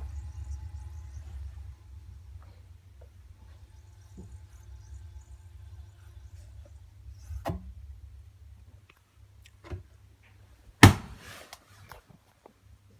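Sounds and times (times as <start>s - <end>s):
low hum: 0.0s - 11.4s
loud pop: 10.8s - 11.4s.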